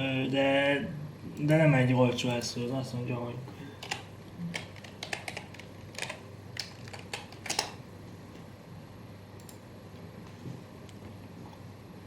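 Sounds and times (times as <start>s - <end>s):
computer keyboard typing: 3.8s - 7.8s.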